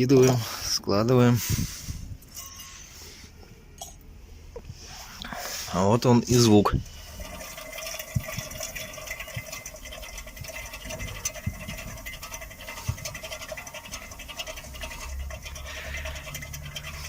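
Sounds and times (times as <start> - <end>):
wheel bearing scraping rasp: 6.9 - 17.0.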